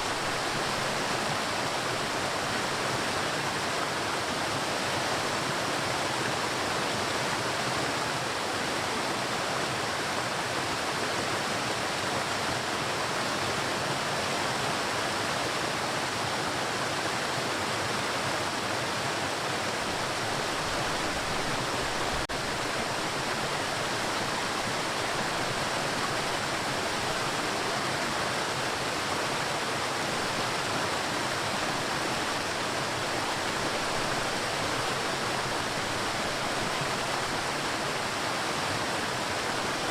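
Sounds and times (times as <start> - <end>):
waterfall rushing: 0.0 - 11.0, 15.2 - 39.9.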